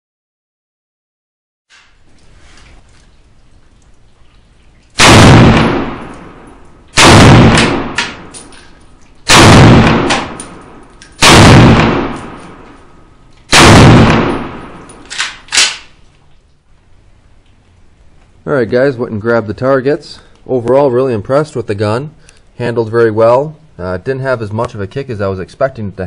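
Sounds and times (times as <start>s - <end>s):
rifle shots with echo: 5.0s - 8.5s, 9.3s - 16.0s.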